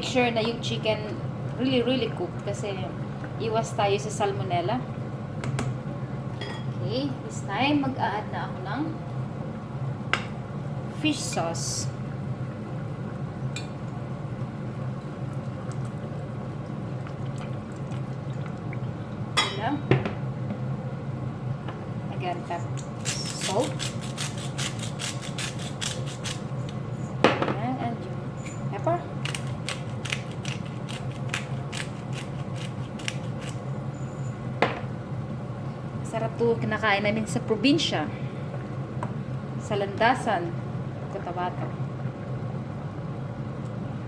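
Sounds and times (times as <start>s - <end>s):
steady low hum: 0.0s - 44.0s
soup bubbling in a pot: 12.0s - 19.4s, 38.4s - 44.0s.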